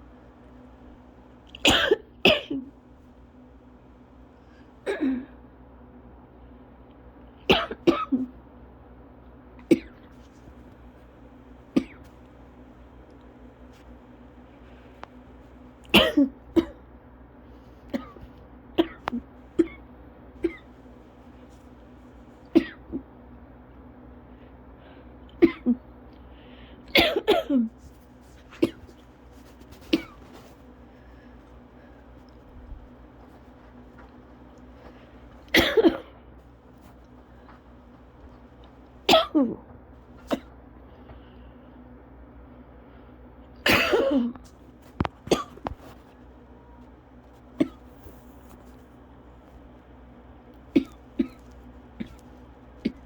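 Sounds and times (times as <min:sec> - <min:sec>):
person coughing: 0:01.5 - 0:02.7, 0:04.8 - 0:05.4, 0:07.5 - 0:08.3, 0:09.7 - 0:10.1, 0:11.7 - 0:12.1, 0:15.9 - 0:16.8, 0:17.9 - 0:19.8, 0:20.4 - 0:20.7, 0:22.5 - 0:23.0, 0:25.4 - 0:25.8, 0:26.9 - 0:27.8, 0:28.5 - 0:29.0, 0:29.7 - 0:30.5, 0:35.5 - 0:36.2, 0:39.1 - 0:39.6, 0:43.6 - 0:44.4, 0:45.3 - 0:45.8, 0:47.6 - 0:48.1, 0:50.7 - 0:52.2, 0:52.8 - 0:53.0.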